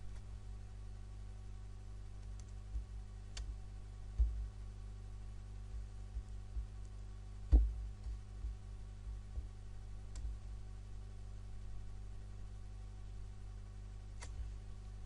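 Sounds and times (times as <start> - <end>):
low electrical hum: 0.0 - 15.0
soft clicks: 2.2 - 2.6, 3.3 - 3.5
low thumps of handling: 4.2 - 4.5, 7.5 - 9.6.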